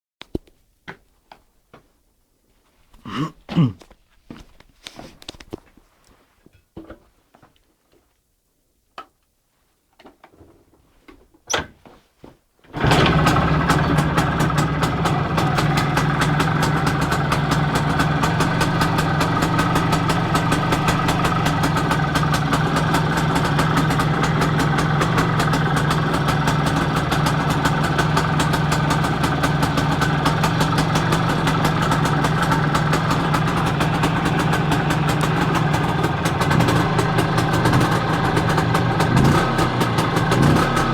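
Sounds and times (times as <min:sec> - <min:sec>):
motorcycle engine idling: 0:12.8 - 0:40.9.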